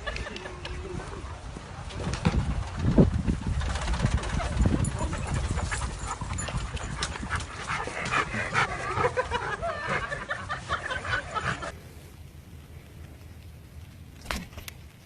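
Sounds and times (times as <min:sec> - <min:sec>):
dog panting: 0:04.9 - 0:10.2.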